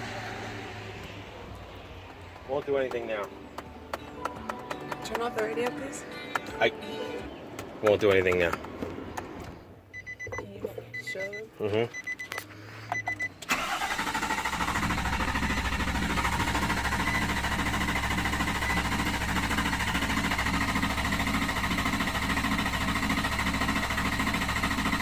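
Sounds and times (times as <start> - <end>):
engine cranking by starter: 13.4 - 25.0.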